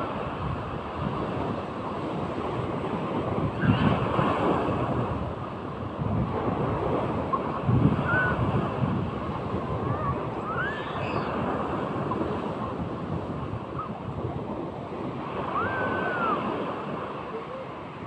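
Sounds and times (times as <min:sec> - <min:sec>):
sea surf breaking: 0:00.0 - 0:18.0
wind buffeting microphone: 0:00.0 - 0:18.0
faint high-pitched calls: 0:09.9 - 0:11.4.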